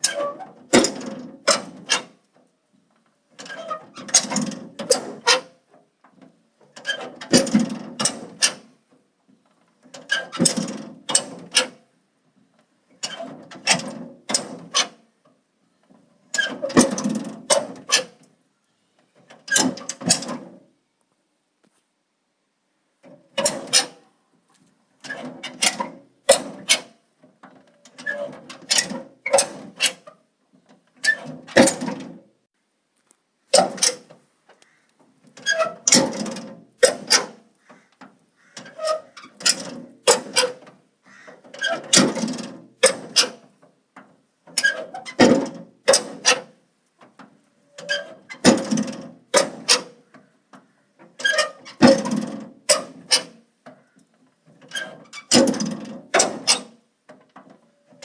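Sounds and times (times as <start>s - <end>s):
metal door rattling: 0.0s - 2.2s, 3.3s - 5.6s, 6.2s - 8.8s, 9.8s - 11.8s, 13.0s - 15.0s, 15.9s - 18.2s, 19.2s - 20.6s, 23.1s - 24.1s, 25.0s - 30.1s, 30.7s - 32.2s, 33.5s - 34.2s, 35.3s - 37.4s, 38.1s - 46.6s, 47.8s - 50.0s, 51.1s - 53.4s, 54.5s - 56.8s.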